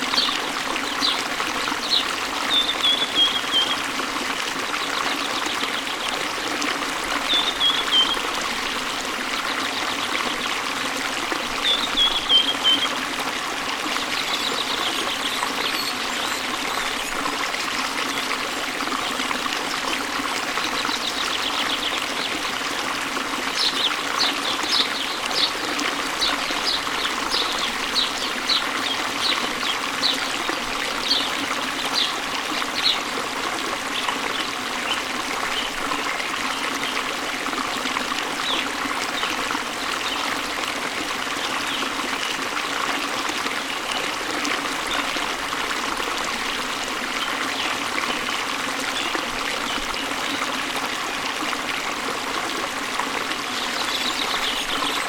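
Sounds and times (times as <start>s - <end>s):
waterfall and stream rushing: 0.0s - 55.0s
small birds chirping: 0.1s - 3.8s.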